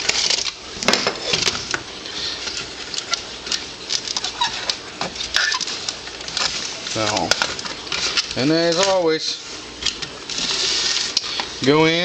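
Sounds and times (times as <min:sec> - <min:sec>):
small parts clicking and rattling: 0:00.0 - 0:09.2.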